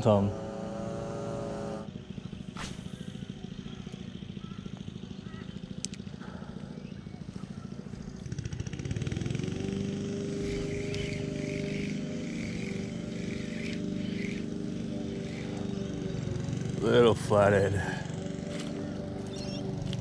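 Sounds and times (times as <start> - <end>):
engine revving up: 0.0 - 3.3, 8.2 - 20.0.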